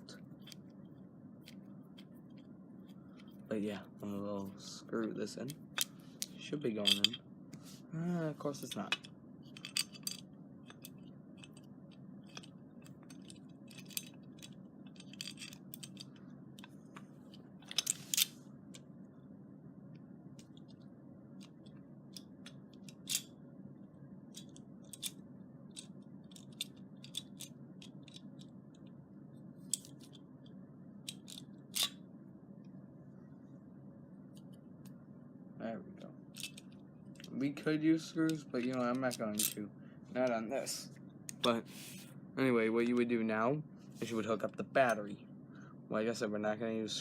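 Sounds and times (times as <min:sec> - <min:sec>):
steady low hum: 0:00.0 - 0:47.0
metal parts clicking and scraping: 0:05.5 - 0:07.2, 0:08.5 - 0:18.8, 0:21.4 - 0:23.3, 0:24.3 - 0:28.5, 0:29.6 - 0:30.2, 0:31.1 - 0:32.0, 0:36.4 - 0:37.4, 0:38.2 - 0:39.6.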